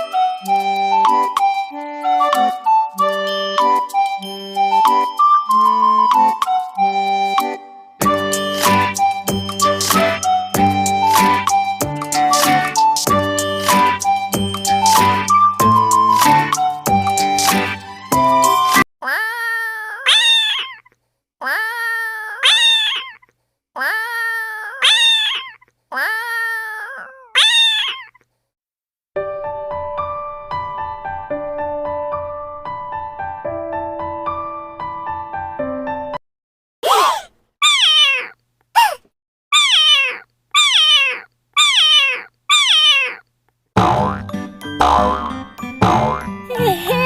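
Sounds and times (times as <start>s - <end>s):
music: 0.0s - 18.8s, 29.2s - 36.2s, 43.8s - 47.0s
cat meowing: 19.0s - 20.8s, 21.4s - 23.2s, 23.8s - 28.2s, 37.0s - 38.4s, 39.6s - 43.2s.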